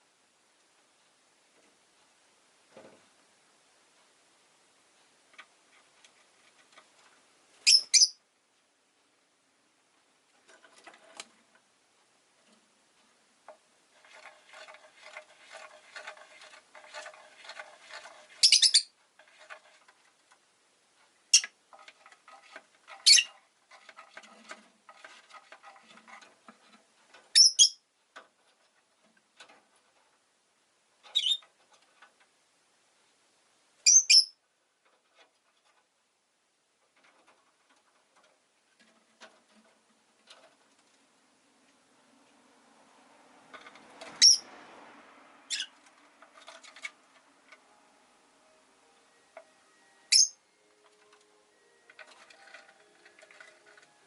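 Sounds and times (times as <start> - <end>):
bird loud shrill chirps: 18.4 - 18.9.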